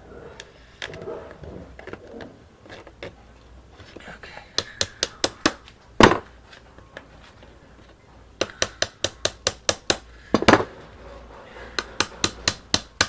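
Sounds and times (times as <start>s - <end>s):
hammer tapping on metal: 8.4s - 10.6s, 11.8s - 13.0s.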